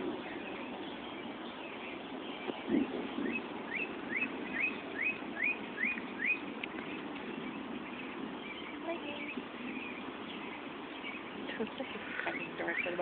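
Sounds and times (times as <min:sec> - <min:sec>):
low outdoor rumble: 0:00.0 - 0:13.0
bird whistling rising notes: 0:03.2 - 0:06.5.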